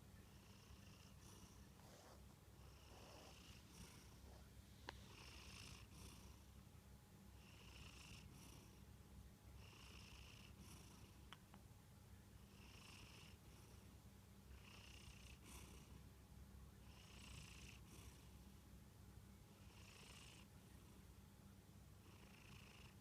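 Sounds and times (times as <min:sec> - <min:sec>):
cat snoring: 0:00.3 - 0:04.4, 0:05.0 - 0:06.5, 0:07.4 - 0:08.8, 0:09.6 - 0:11.2, 0:12.4 - 0:13.9, 0:14.5 - 0:16.0, 0:16.8 - 0:18.4, 0:19.6 - 0:20.5, 0:22.0 - 0:23.0.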